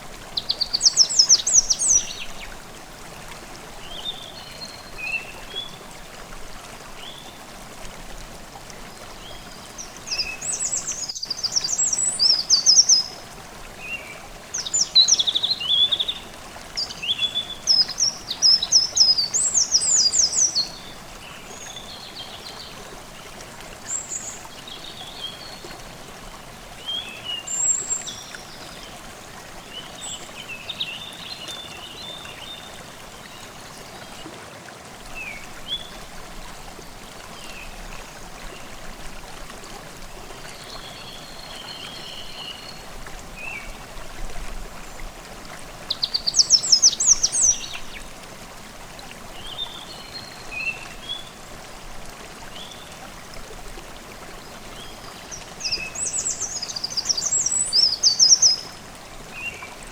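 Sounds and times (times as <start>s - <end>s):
stream babbling: 0.0s - 59.9s
songbirds singing: 0.3s - 2.6s, 45.8s - 48.1s, 54.4s - 59.8s.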